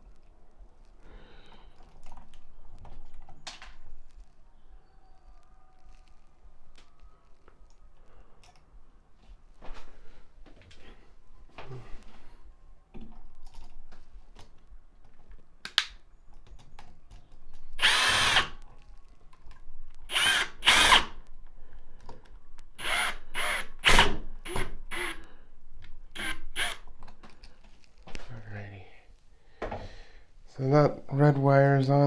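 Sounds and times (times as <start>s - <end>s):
cordless drill whirring: 17.8s - 18.6s, 20.1s - 21.2s, 22.8s - 25.2s, 26.1s - 26.8s.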